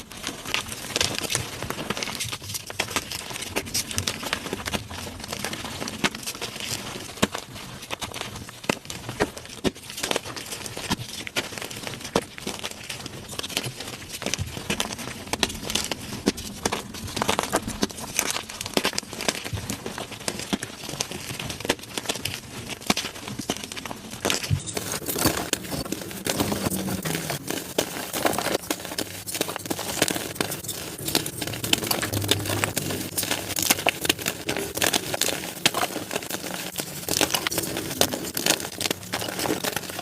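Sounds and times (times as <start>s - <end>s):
chalk being crushed: 24.6s - 40.0s.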